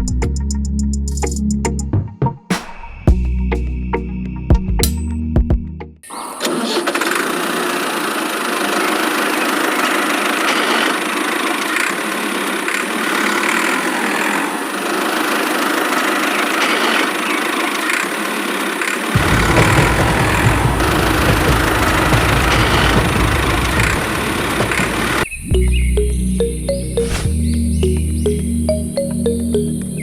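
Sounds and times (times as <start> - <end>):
engine idling: 17.5 - 25.2
deep rumble: 19.2 - 26.4.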